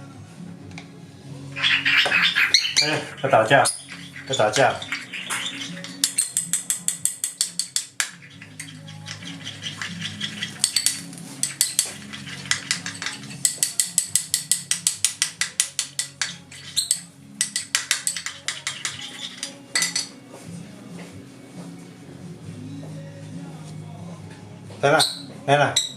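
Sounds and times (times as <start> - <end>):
spoon clinking against dish: 1.6 - 20.2.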